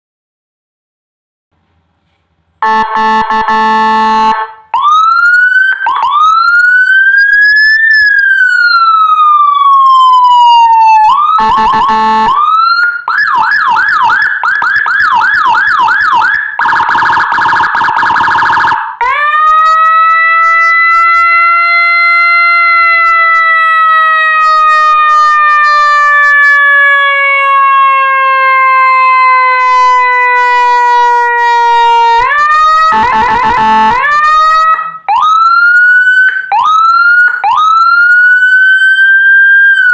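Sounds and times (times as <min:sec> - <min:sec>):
electronic police siren: 0:02.6 - 0:39.9.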